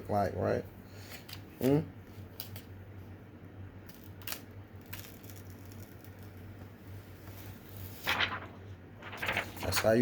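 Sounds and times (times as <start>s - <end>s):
low steady hum: 0.0s - 10.0s
paper rustling and crackling: 7.3s - 10.0s.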